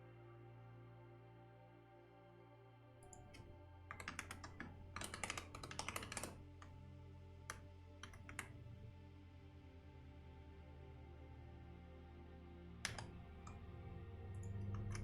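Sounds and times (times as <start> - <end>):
soft ambient music: 0.0 - 15.0
computer keyboard typing: 3.1 - 6.8, 7.5 - 8.8, 12.9 - 13.6, 14.4 - 15.0.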